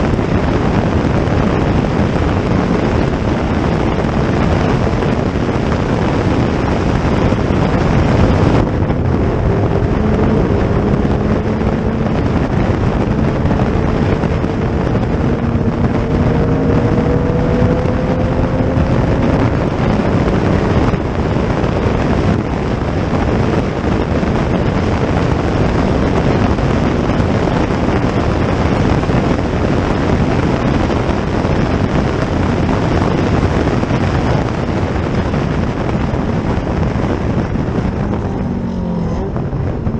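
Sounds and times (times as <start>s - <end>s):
racing car engine accelerating: 0.0s - 39.9s
wind buffeting microphone: 0.0s - 39.9s.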